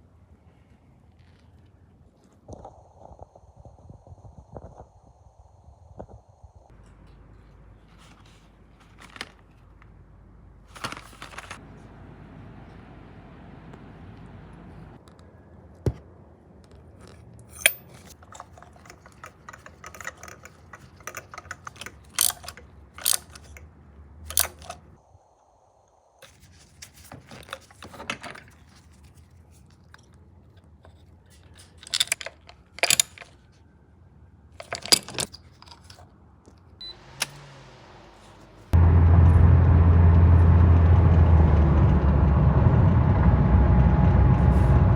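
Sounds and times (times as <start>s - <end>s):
hard objects clicking and rattling: 17.5s - 23.7s, 24.3s - 24.9s, 31.0s - 33.5s, 34.6s - 36.1s.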